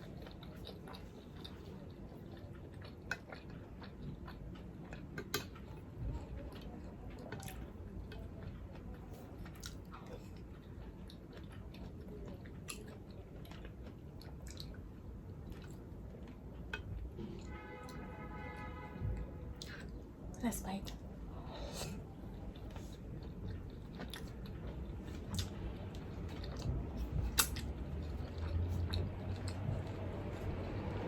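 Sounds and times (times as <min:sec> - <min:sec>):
person chewing food: 0:00.0 - 0:18.0, 0:20.9 - 0:31.0.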